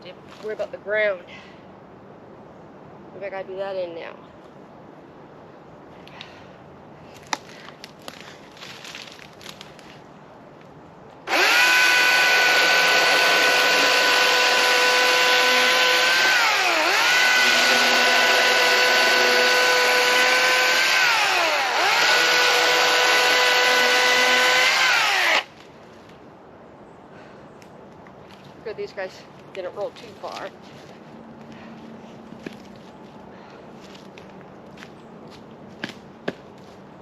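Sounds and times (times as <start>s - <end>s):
chainsaw cutting log: 11.3s - 25.5s.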